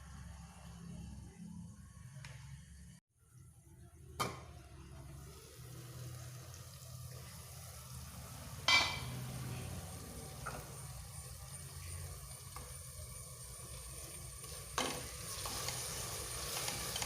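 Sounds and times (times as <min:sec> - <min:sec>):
food sizzling in pan: 0:04.9 - 0:17.0
spoon striking metal pan: 0:08.7 - 0:09.2.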